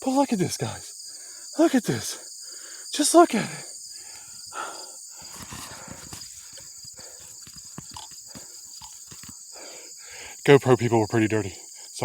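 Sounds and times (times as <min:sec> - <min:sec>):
crickets chirring: 0:00.0 - 0:12.0
small clicks and rustles: 0:05.2 - 0:09.6.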